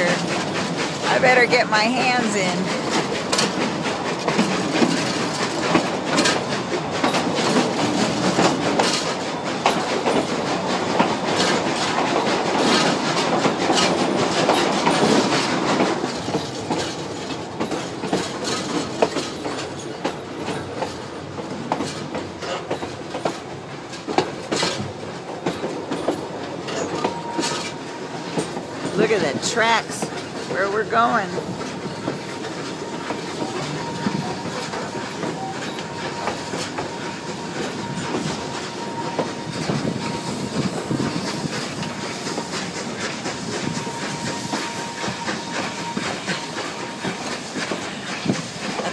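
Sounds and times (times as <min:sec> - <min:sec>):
train cars rumbling on track: 0:00.0 - 0:48.9.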